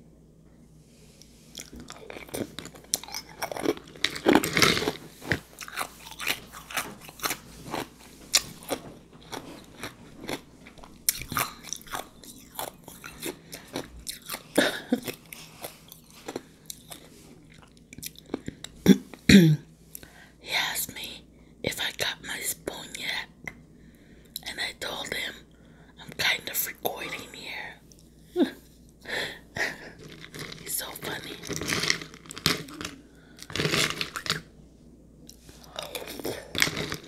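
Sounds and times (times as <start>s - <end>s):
ice crunching while chewed: 1.5s - 19.0s, 29.6s - 34.5s, 35.2s - 37.0s.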